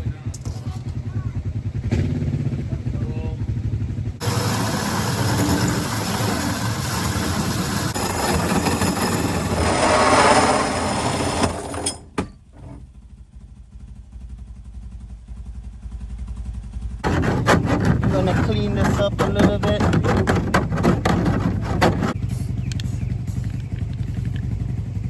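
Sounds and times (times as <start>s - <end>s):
power saw cutting metal roof: 4.2s - 12.8s, 17.0s - 22.2s
click: 22.6s - 24.5s.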